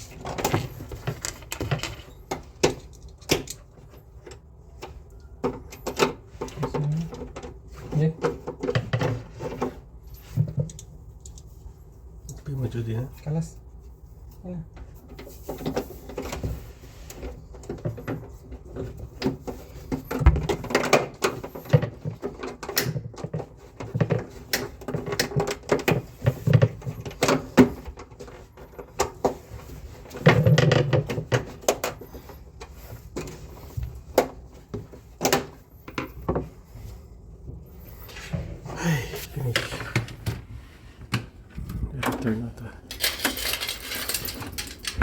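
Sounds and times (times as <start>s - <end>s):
hard parts clattering: 42.0s - 45.0s.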